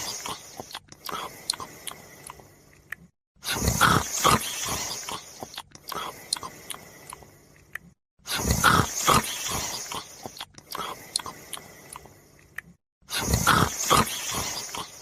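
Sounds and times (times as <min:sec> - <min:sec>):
dog snoring: 0:03.5 - 0:06.2, 0:08.3 - 0:11.0, 0:13.1 - 0:15.0.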